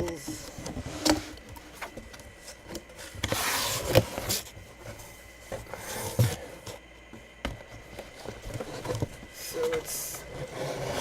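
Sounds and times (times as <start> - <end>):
cardboard rubbing and rasping: 3.0 - 6.6, 7.8 - 11.0.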